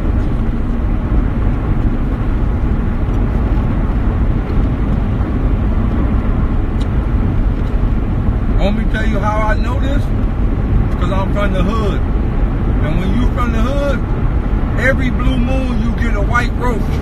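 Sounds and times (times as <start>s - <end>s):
road and wind noise rumbling: 0.0s - 17.0s.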